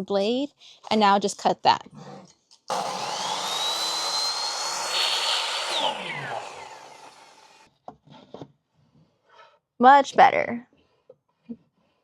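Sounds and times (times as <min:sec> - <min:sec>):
miter saw whining: 0:02.7 - 0:07.7
saw blade cutting board: 0:02.7 - 0:07.7.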